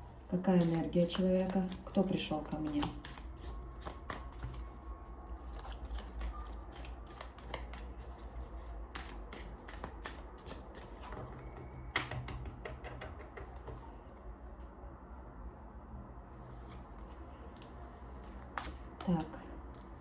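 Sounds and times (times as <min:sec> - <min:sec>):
cards shuffling: 0:00.1 - 0:11.7, 0:16.5 - 0:20.0.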